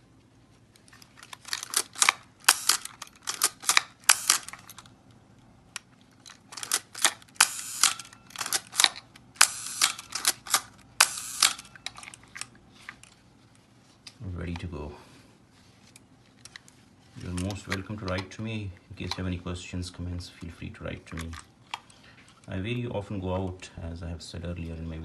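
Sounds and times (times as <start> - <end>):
camera shutter clicking and ratcheting: 1.2 - 4.9, 6.3 - 12.5.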